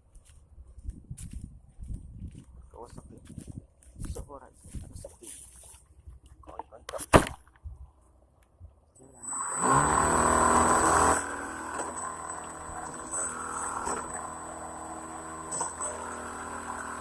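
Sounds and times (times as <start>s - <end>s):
model airplane motor whining: 9.0s - 17.0s.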